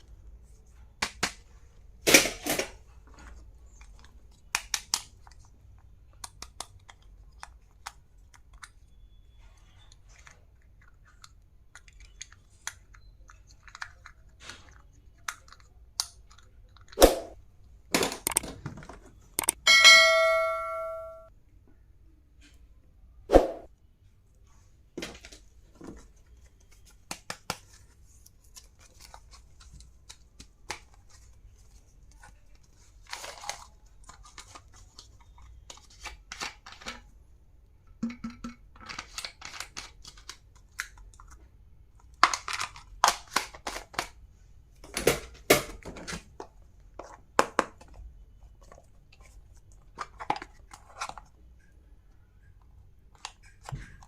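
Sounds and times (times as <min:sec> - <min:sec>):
clicks and taps: 0:19.4 - 0:19.6
plastic and cardboard rustling: 0:24.4 - 0:37.1, 0:44.8 - 0:54.0.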